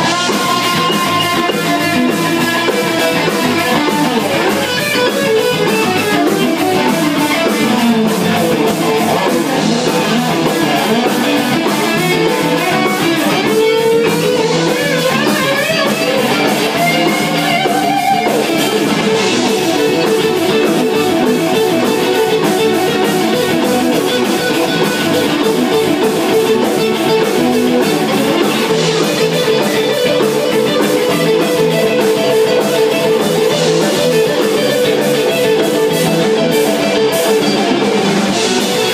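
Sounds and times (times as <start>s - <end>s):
band jamming: 0.0s - 38.9s
electric guitar bending notes: 0.0s - 38.9s.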